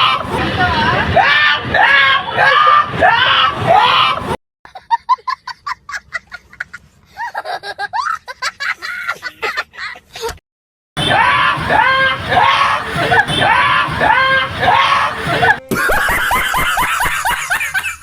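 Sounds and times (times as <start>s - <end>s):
loud shouting: 0.0s - 4.4s, 11.0s - 15.6s.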